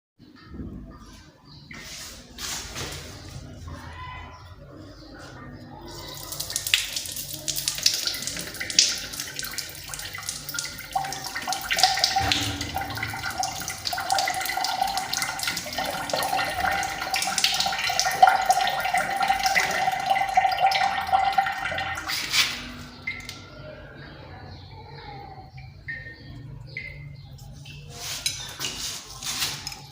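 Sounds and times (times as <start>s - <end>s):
tap water running into basin: 5.9s - 23.5s
steady tone: 12.2s - 14.4s.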